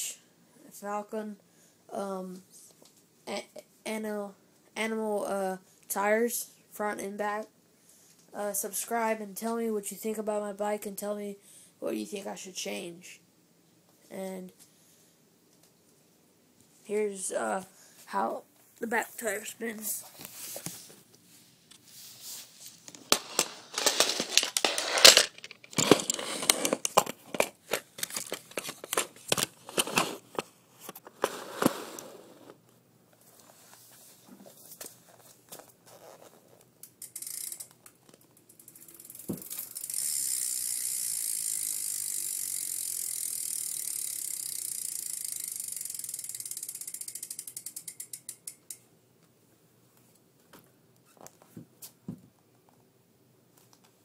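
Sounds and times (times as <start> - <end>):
bike hub pawls clicking: 36.9 - 48.8
spinning wheel buzzing: 38.5 - 48.6.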